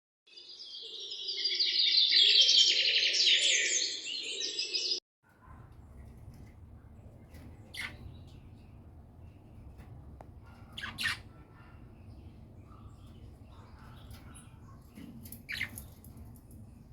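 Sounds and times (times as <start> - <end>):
birds chirping and singing: 0.3 - 5.0, 7.2 - 16.7.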